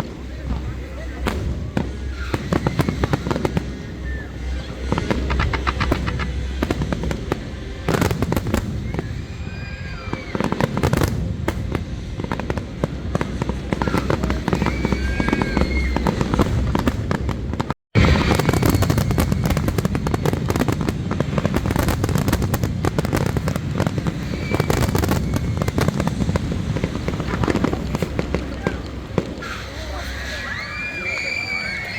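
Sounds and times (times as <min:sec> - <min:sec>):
voices: 0:00.0 - 0:17.6, 0:18.2 - 0:31.9
fireworks crackling and banging: 0:00.0 - 0:31.9.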